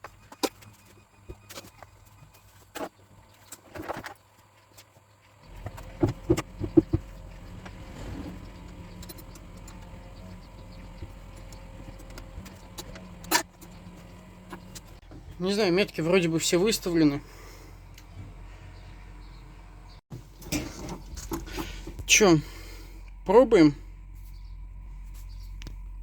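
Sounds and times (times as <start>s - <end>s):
steady low hum: 16.5s - 26.0s.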